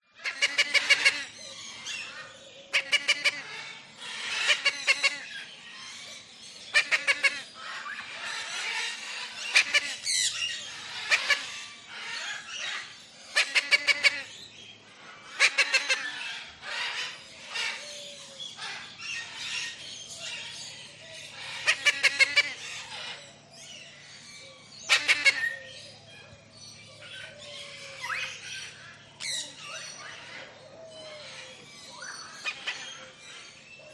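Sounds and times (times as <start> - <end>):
tropical birds chirping: 0.0 - 33.9.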